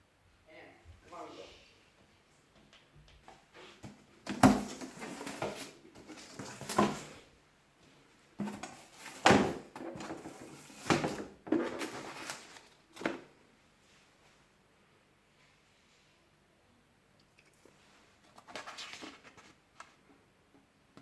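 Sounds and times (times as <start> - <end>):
rustling and scraping: 3.2 - 7.3, 7.9 - 14.1, 17.6 - 20.0.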